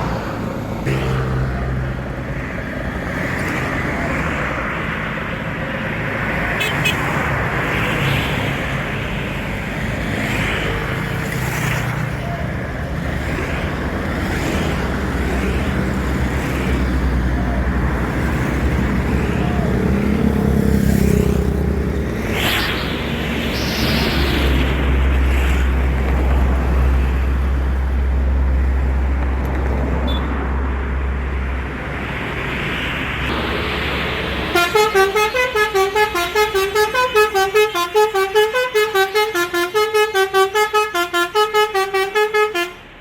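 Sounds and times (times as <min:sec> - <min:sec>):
diesel bus engine rumbling: 0:00.0 - 0:06.6, 0:08.3 - 0:43.0
road traffic noise: 0:00.0 - 0:43.0.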